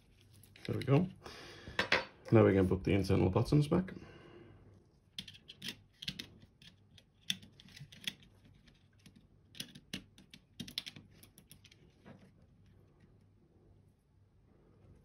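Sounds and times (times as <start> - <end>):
plastic mouse parts clicking: 5.1 - 12.0.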